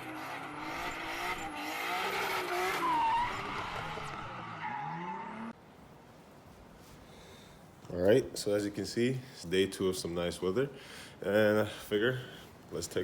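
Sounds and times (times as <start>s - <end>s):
car engine revving: 0.0s - 5.6s
tires squealing: 0.0s - 5.6s.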